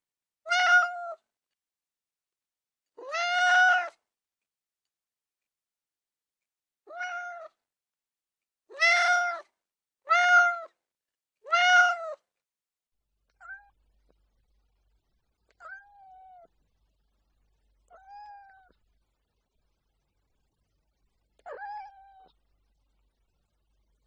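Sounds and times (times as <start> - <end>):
cat meowing: 0.5 - 1.2, 3.0 - 4.0, 6.9 - 7.6, 8.7 - 9.5, 10.1 - 10.8, 11.4 - 12.2, 13.4 - 13.8, 15.5 - 16.5, 17.9 - 18.8, 21.4 - 22.4.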